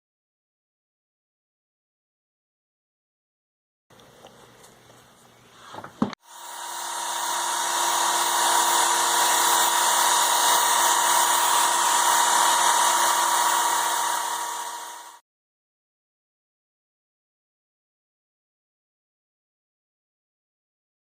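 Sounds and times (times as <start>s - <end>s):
power sander motor running: 6.2s - 15.2s.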